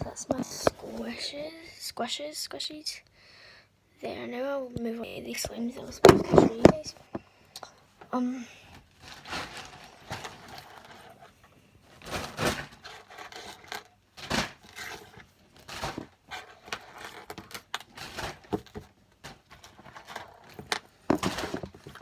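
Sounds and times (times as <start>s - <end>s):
bag crinkling and rustling: 8.8s - 22.0s.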